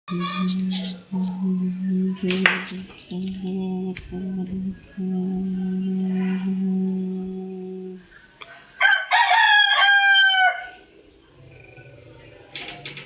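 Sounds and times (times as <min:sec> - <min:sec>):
steady low hum: 0:00.1 - 0:08.0
rooster crowing: 0:08.8 - 0:10.8.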